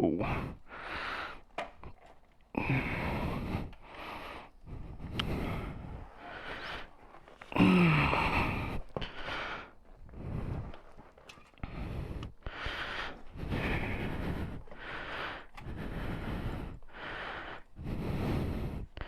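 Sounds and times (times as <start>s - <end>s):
man breathing hard: 0.2s - 19.0s
man grunting: 7.6s - 8.7s.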